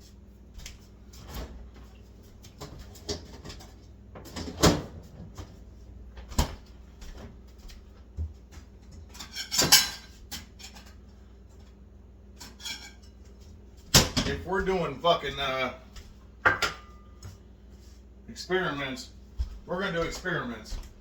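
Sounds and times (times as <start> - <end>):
dishes and utensils clattering: 9.1 - 11.0, 12.4 - 13.2, 16.4 - 17.0.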